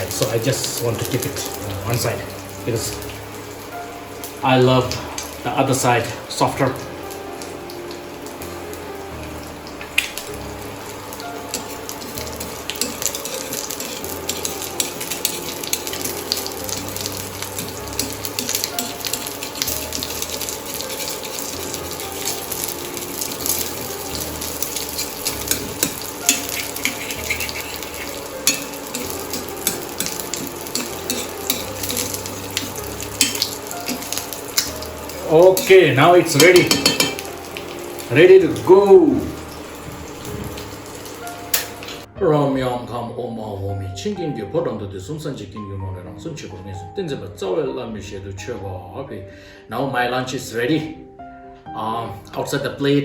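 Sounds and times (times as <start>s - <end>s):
omelette sizzling in oil: 0.0s - 42.1s.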